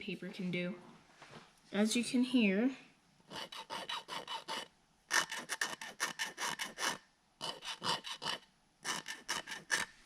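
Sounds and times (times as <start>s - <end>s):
sandpaper rubbing plastic: 3.3s - 9.9s.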